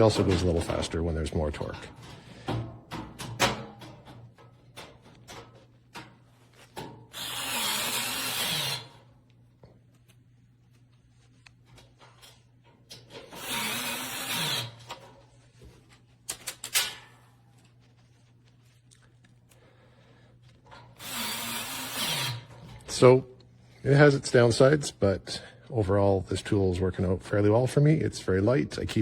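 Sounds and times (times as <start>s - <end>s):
electric screwdriver driving screws: 7.1s - 9.0s, 13.2s - 14.8s, 21.0s - 22.6s.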